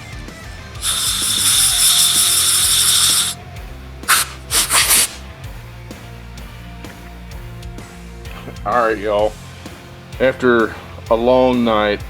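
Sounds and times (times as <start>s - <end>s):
high-speed power tool whining: 0.8s - 3.4s, 4.1s - 5.2s.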